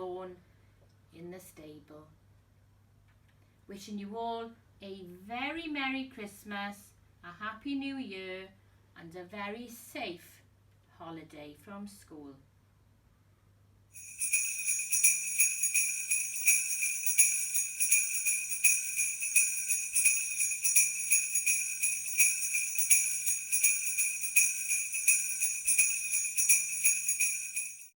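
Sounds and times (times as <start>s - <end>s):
jingle bells shaken: 14.0s - 28.0s.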